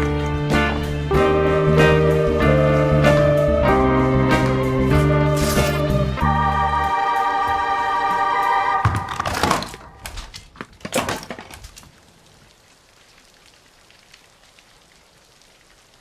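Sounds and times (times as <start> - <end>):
sharp cracking and crashing: 8.8 - 14.3.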